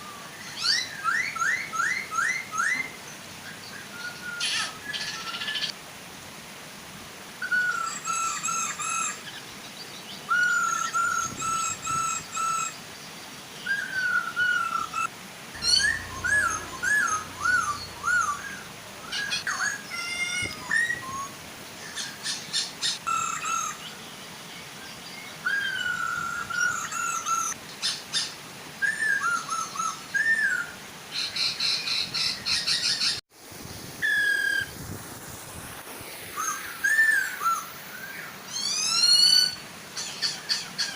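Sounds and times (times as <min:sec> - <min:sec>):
birds whistling calls: 0:00.0 - 0:05.8, 0:07.4 - 0:09.4, 0:10.2 - 0:12.8, 0:13.6 - 0:24.0, 0:25.1 - 0:33.2, 0:34.0 - 0:34.7, 0:36.3 - 0:40.9
waterfall rushing: 0:14.8 - 0:23.9.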